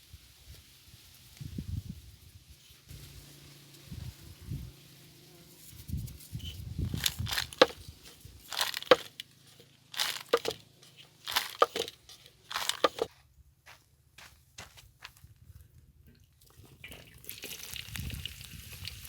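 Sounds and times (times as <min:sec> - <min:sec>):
crunching and crackling: 0:06.4 - 0:13.1.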